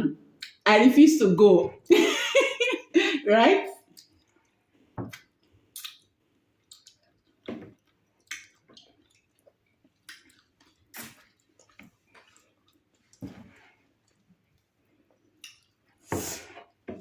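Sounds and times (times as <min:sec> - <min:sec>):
wet chewing and mouth smacking: 0:00.4 - 0:00.6, 0:03.8 - 0:16.0.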